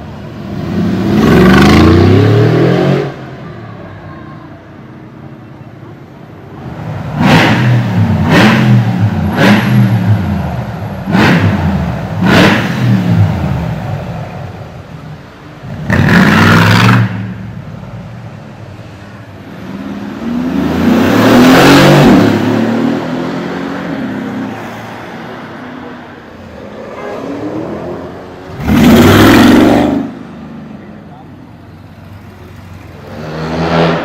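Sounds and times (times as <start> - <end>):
car accelerating: 0.3 - 3.2, 6.6 - 14.2, 19.4 - 34.0
car engine revving: 6.6 - 14.2, 15.6 - 17.6, 19.4 - 24.9, 26.5 - 30.9, 31.8 - 34.0.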